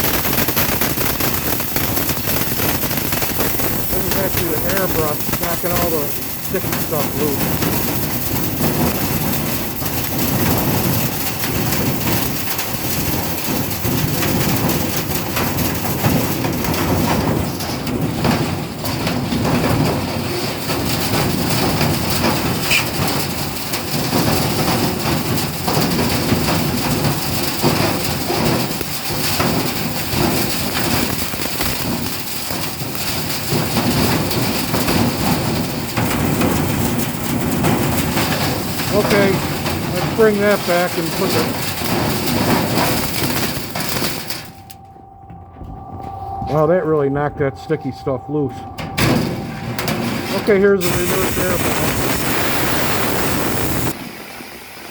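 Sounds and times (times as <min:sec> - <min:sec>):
air whip thrashing in metal ducts: 0:00.0 - 0:44.7
duct vacuum rumbling: 0:00.0 - 0:54.1
debris rattling through ducts: 0:00.0 - 0:54.9
high air hiss: 0:50.8 - 0:54.8.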